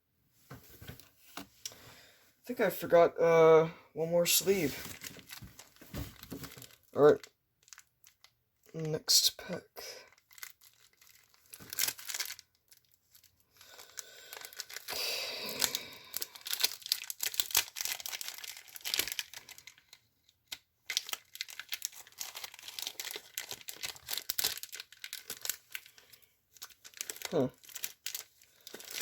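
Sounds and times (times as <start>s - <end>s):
foil wrapper crinkling and tearing: 4.2s - 29.0s.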